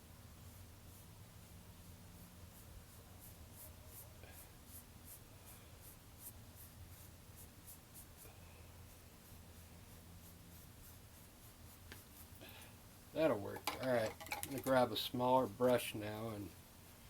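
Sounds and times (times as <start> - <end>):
paintbrush strokes on canvas: 0.3 - 13.4.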